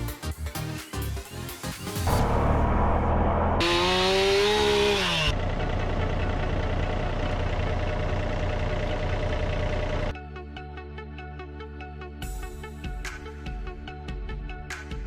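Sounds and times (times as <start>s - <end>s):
chainsaw engine revving: 2.1s - 5.4s.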